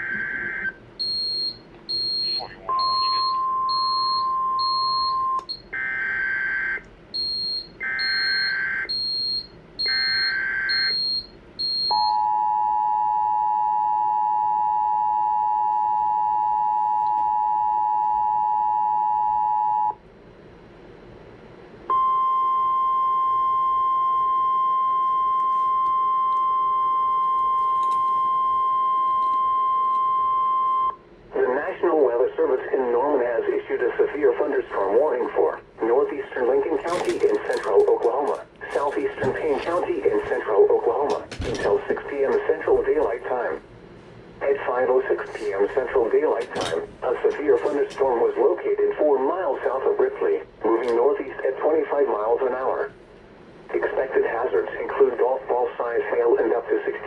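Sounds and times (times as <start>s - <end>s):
data tone bursts: 0.0s - 5.7s, 7.2s - 12.8s
two-tone attention signal: 0.1s - 5.6s
rapid high electronic beeping: 7.2s - 12.2s.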